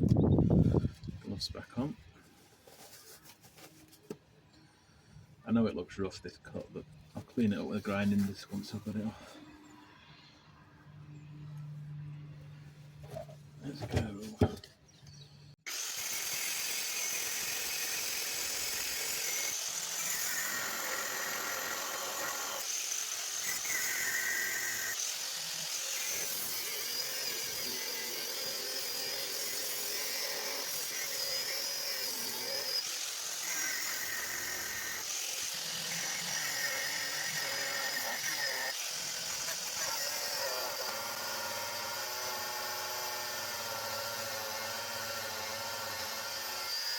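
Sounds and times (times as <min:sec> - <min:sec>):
angle grinder cutting steel: 0:15.7 - 0:46.9.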